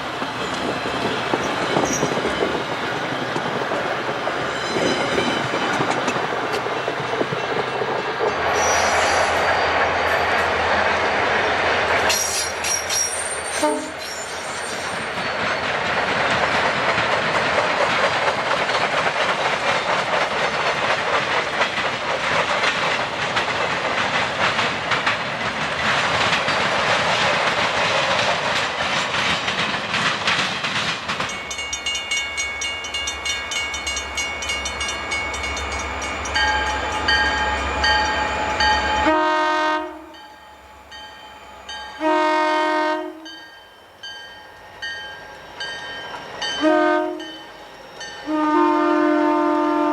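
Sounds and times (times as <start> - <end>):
locomotive rumbling: 0.0 - 49.9
train wheels rushing: 0.0 - 49.9
train horn blasts: 13.5 - 14.1, 38.9 - 40.2, 41.9 - 43.4, 46.6 - 47.4, 48.2 - 49.9.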